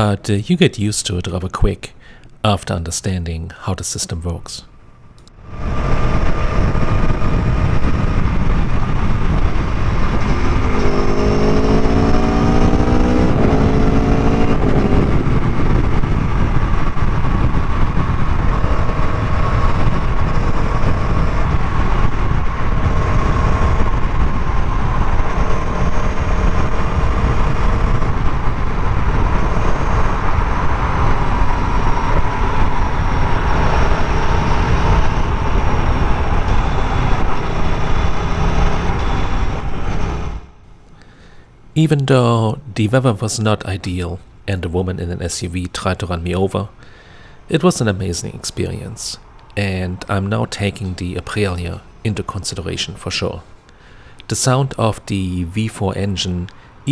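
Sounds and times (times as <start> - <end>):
wind noise: 5.2 - 40.7
motorcycle engine accelerating: 5.3 - 40.6.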